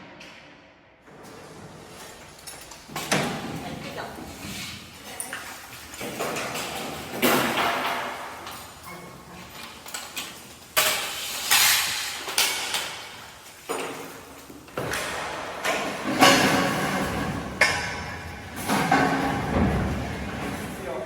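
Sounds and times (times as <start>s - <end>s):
echoing metal clanks: 14.9s - 20.8s.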